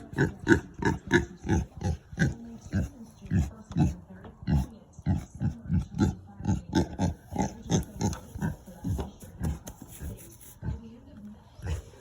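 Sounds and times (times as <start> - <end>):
pig grunting: 0.0 - 8.8.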